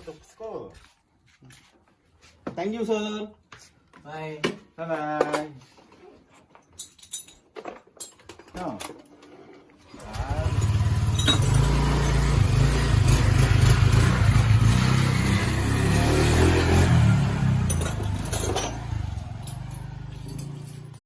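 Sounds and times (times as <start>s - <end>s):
motorcycle engine running: 10.0s - 21.0s.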